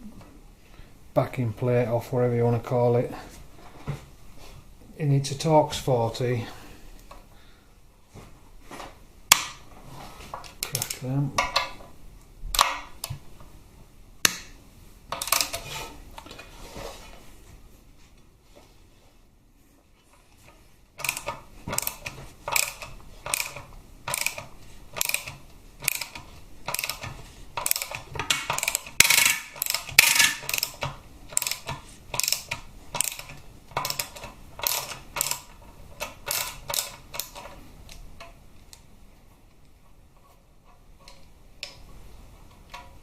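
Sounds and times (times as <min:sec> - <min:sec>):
hand ratchet clicking: 0:21.0 - 0:37.5.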